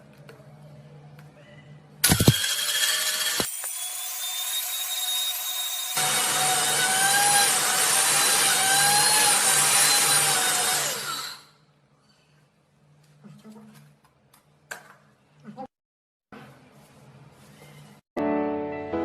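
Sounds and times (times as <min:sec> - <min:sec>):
electric grinder motor whining: 0:02.0 - 0:03.7, 0:05.7 - 0:11.4.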